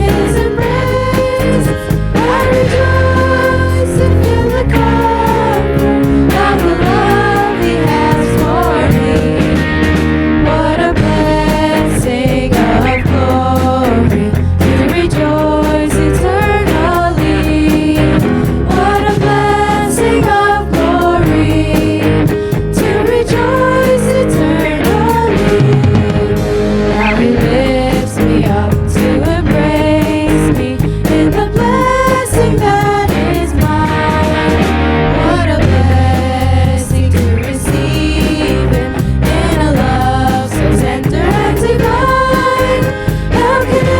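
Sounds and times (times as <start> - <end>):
band music with drums: 0.0 - 43.9
sustained bass: 0.0 - 43.9.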